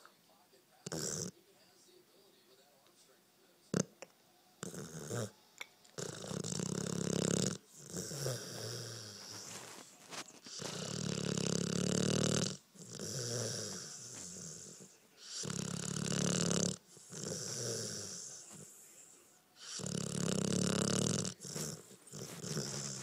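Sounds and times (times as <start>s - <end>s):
dog snoring: 0.8s - 1.4s, 3.7s - 4.0s, 4.6s - 23.0s
dog breathing: 6.0s - 23.0s.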